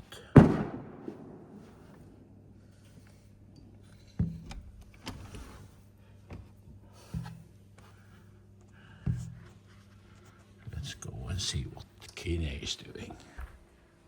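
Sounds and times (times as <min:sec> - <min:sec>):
distant fireworks bangs: 0:00.4 - 0:02.2.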